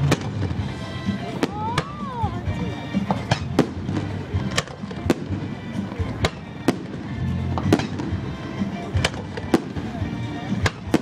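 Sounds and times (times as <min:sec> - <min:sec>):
music with steady bass: 0:00.0 - 0:11.0
firework shells bursting: 0:03.0 - 0:10.0.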